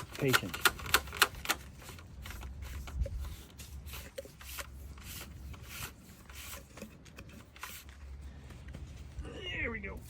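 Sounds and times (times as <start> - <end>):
wire rustling and scraping: 0.0 - 10.0.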